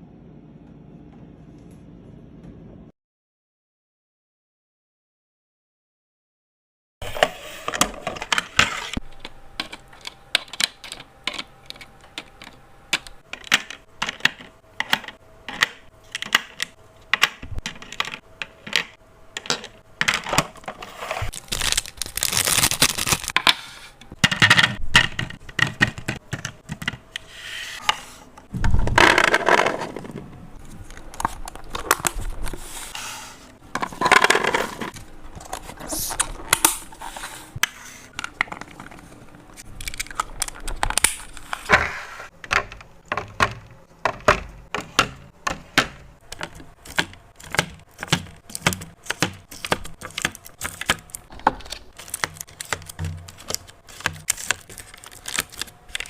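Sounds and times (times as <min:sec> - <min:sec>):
small hard items clicking and clattering: 0:07.7 - 0:27.1, 0:33.7 - 0:36.9, 0:38.1 - 0:41.7, 0:42.3 - 0:56.0
packaging rustling: 0:20.5 - 0:23.4, 0:38.2 - 0:41.7, 0:46.2 - 0:56.0.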